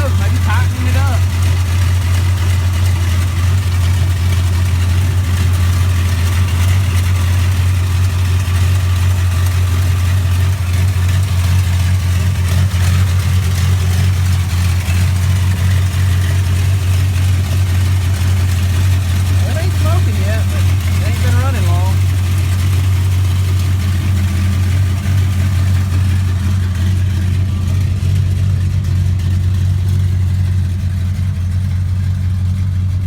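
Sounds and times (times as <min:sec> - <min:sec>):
car engine idling: 0:00.0 - 0:33.0.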